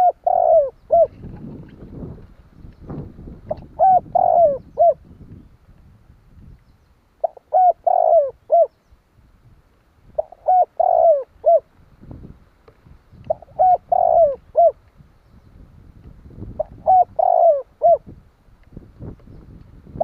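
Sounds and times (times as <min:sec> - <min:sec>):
dove cooing: 0:00.0 - 0:02.2, 0:03.5 - 0:05.1, 0:07.2 - 0:08.8, 0:10.2 - 0:11.7, 0:13.3 - 0:14.8, 0:16.6 - 0:18.1.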